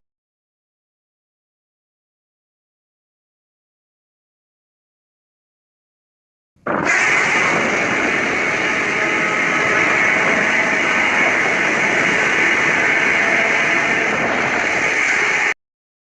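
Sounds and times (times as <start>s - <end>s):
loud steady rushing noise: 6.7s - 15.6s.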